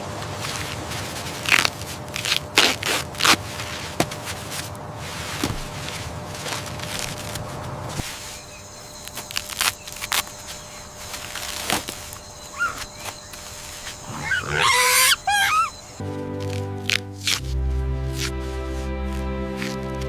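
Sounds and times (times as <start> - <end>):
animal call bending in pitch: 12.4 - 16.0
music: 16.0 - 20.0.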